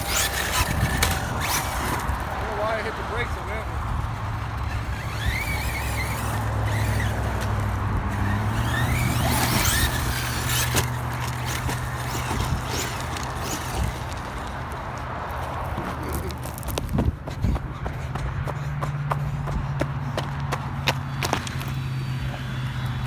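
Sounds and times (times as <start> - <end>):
electric motor whining: 0.0 - 15.0, 20.6 - 23.0.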